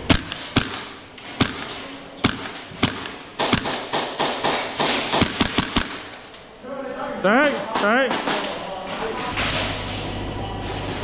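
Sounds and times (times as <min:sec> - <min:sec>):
airsoft gun shots: 0:00.0 - 0:06.1.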